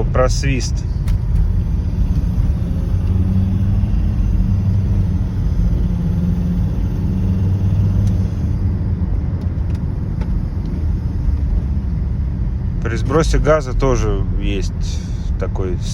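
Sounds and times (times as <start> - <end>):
diesel car engine accelerating: 0.0 - 15.9.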